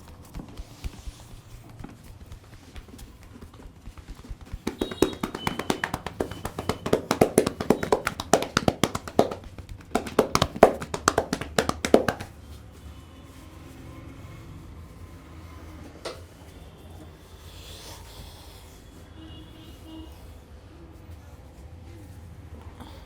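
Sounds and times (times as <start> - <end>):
hands slapping on skin: 0.0 - 12.4.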